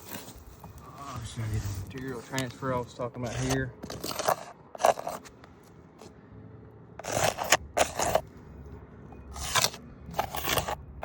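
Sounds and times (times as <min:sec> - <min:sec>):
asphalt shingles scraping and rustling: 0:00.0 - 0:06.1, 0:07.0 - 0:08.5, 0:09.2 - 0:11.0.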